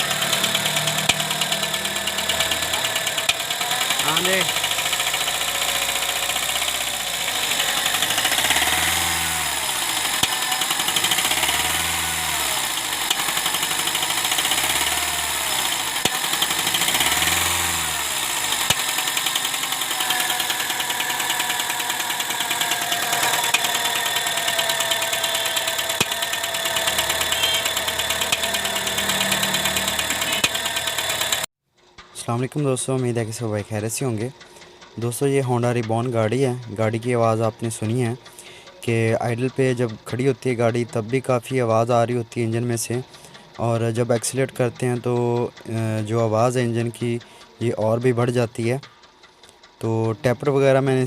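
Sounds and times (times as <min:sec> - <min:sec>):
car engine revving and idling: 0:00.0 - 0:31.5.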